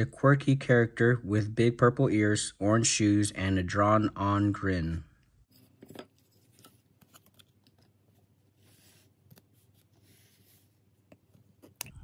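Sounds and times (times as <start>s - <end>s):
cards clicking and rustling: 6.2s - 8.4s.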